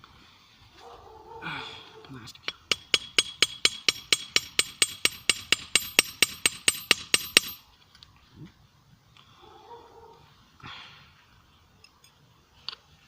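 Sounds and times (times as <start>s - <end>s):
hammer striking steel on anvil: 2.5s - 7.6s.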